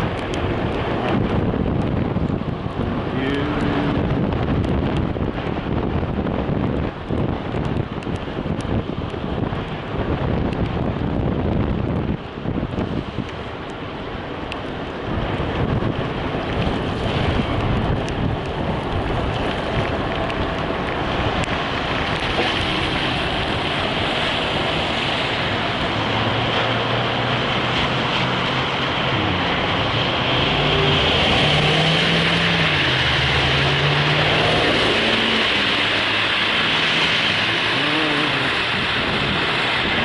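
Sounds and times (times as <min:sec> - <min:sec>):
road and wind noise: 0:00.0 - 0:40.0
car engine hum: 0:13.4 - 0:40.0.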